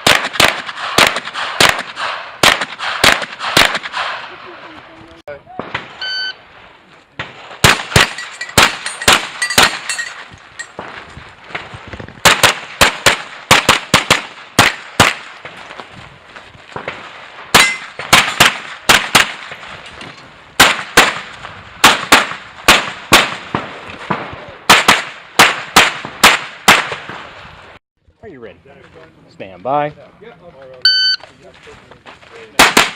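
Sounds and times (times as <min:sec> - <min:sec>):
pistol shots: 0:00.0 - 0:04.4, 0:07.2 - 0:10.0, 0:12.2 - 0:15.6, 0:16.7 - 0:19.8, 0:20.6 - 0:27.3, 0:32.6 - 0:32.9.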